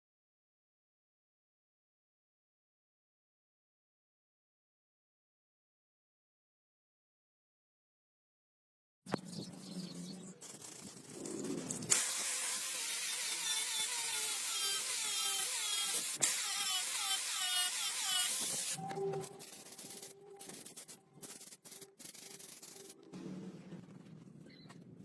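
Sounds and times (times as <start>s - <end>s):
hand sanding strokes: 17.3s - 23.1s.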